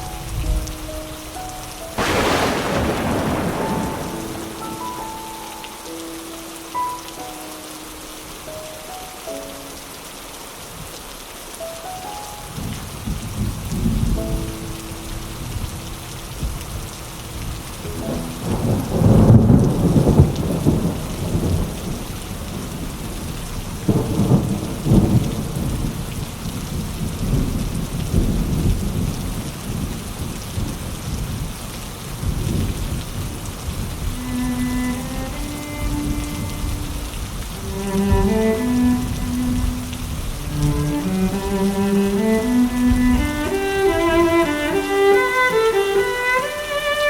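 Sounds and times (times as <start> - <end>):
steady rain: 0.0 - 47.0
thunder rumbling: 2.0 - 5.6, 17.4 - 31.5, 32.2 - 45.6.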